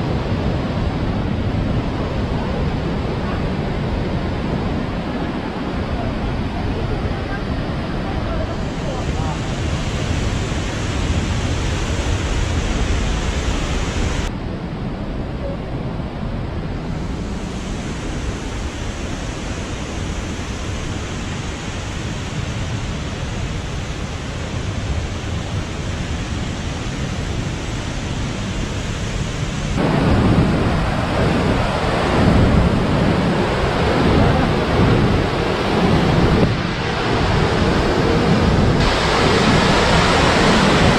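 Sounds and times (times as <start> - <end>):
waterfall rushing: 1.3 - 14.3, 16.9 - 40.9.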